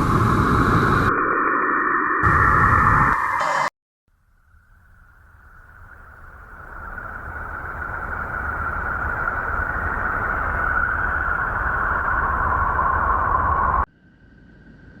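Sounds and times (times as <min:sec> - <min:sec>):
deep rumble: 0:04.3 - 0:13.9
eerie rushing hiss: 0:04.5 - 0:14.3.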